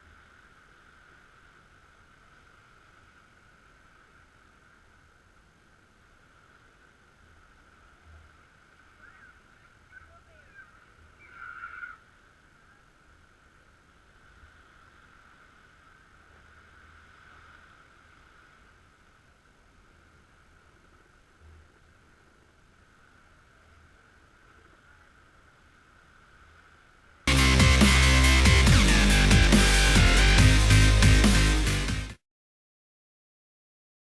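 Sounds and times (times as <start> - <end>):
faint bird calls: 8.9 - 12.8
steady high-pitched drone: 27.3 - 32.1.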